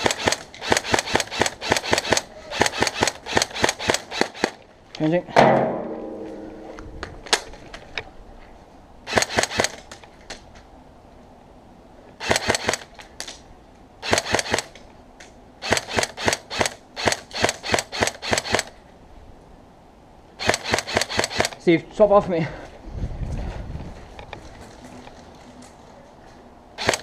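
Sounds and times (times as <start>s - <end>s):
airsoft gun firing: 0.0s - 4.6s, 26.8s - 27.0s.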